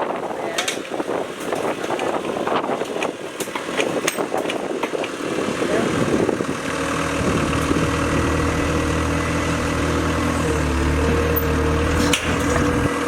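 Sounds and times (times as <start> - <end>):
diesel engine running: 5.1 - 13.0.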